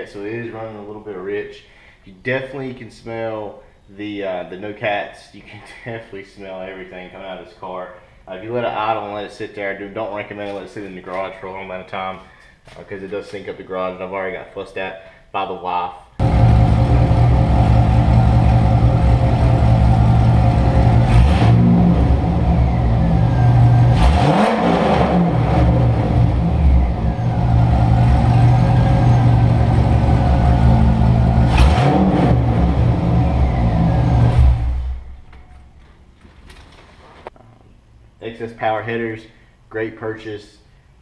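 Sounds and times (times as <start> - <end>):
car engine idling loudly: 16.2 - 24.1
engine throttle blips: 16.2 - 35.8.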